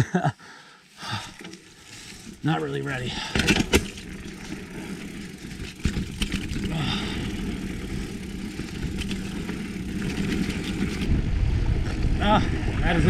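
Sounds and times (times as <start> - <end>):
bike clicks and rattles: 0.9 - 11.1
tyres rumbling over dirt: 1.0 - 13.0
wind rushing over microphone: 6.1 - 13.0.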